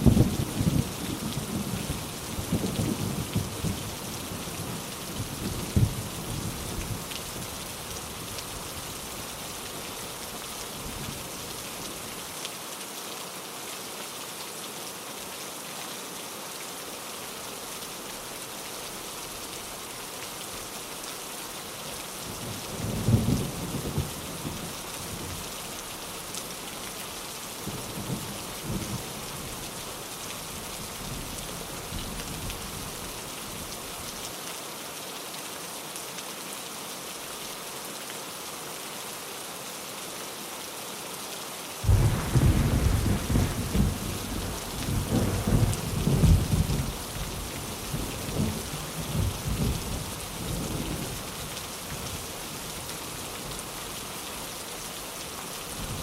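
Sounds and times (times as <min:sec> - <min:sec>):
steady rain: 0:00.0 - 0:56.0
thunder rumbling: 0:41.8 - 0:49.4.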